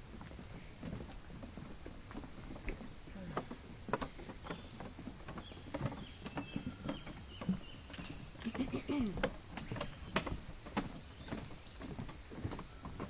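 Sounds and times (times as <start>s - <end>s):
insect chorus drone: 0.0s - 13.0s
footsteps scuffing on track: 9.1s - 13.0s.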